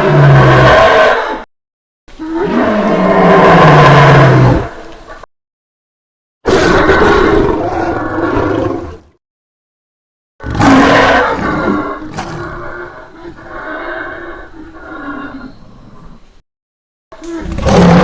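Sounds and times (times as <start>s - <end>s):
monster roar: 10.4s - 14.2s, 17.2s - 18.0s.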